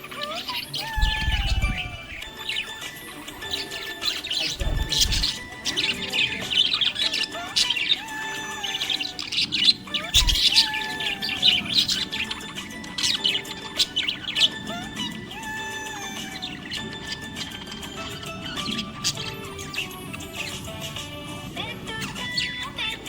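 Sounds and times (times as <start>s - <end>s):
parrots chirping and squawking: 0.0s - 23.0s
soft background music: 0.0s - 23.0s
low thumps: 0.9s - 2.3s.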